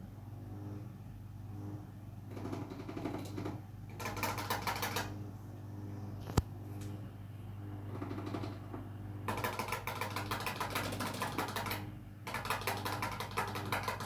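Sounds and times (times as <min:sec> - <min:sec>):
cockatiel rapid tapping: 0:09.3 - 0:14.0.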